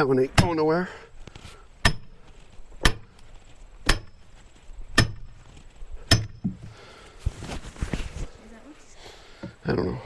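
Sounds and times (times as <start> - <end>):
maul striking steel wedge: 0.2 - 0.7, 1.8 - 2.2, 2.8 - 3.2, 3.8 - 4.3, 4.9 - 5.4, 6.0 - 6.6.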